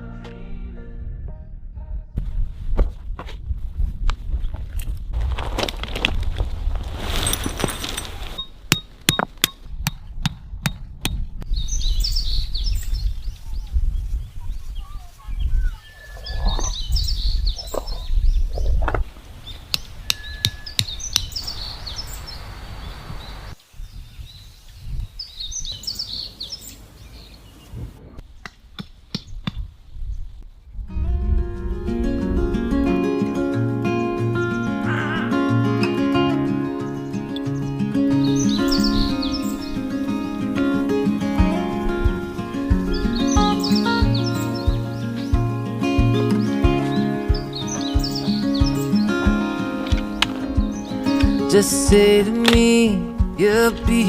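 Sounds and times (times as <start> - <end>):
steady low rumble: 0.0 - 5.5
birds chirping: 11.4 - 30.4, 33.2 - 54.0.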